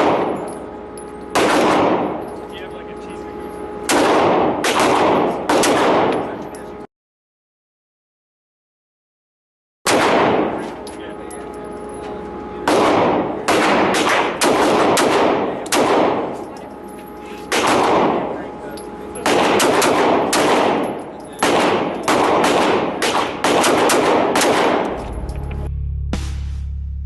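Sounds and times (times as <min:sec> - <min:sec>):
gunshots with ringing tail: 0:00.0 - 0:06.4, 0:09.9 - 0:11.7, 0:12.4 - 0:16.9, 0:17.5 - 0:25.6
music with low bass: 0:24.9 - 0:27.0.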